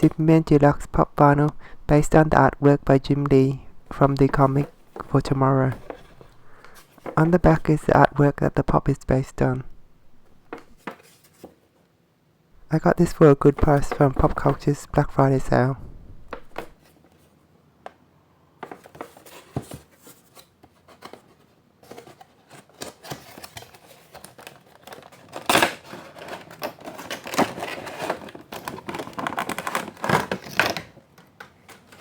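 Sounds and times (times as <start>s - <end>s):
packaging rustling and scraping: 4.2s - 7.9s, 10.2s - 11.8s, 18.6s - 32.0s.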